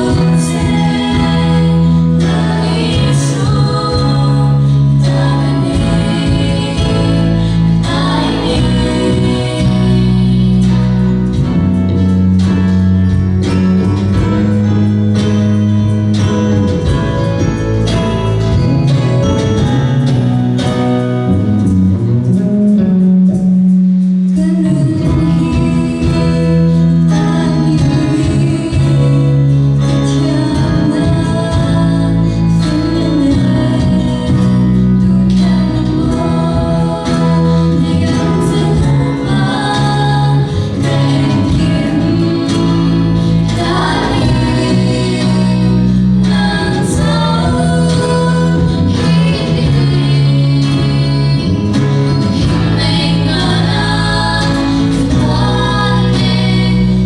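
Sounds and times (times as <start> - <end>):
voices singing: 0.0 - 12.7, 24.3 - 57.0
bass: 0.0 - 57.0
guitar: 0.0 - 57.0.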